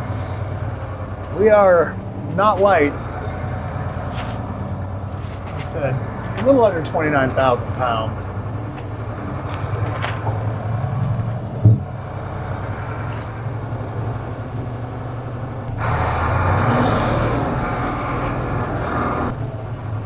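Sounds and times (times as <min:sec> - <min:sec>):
diesel truck engine under load: 0:00.0 - 0:20.0
heavy thump: 0:11.6 - 0:11.9.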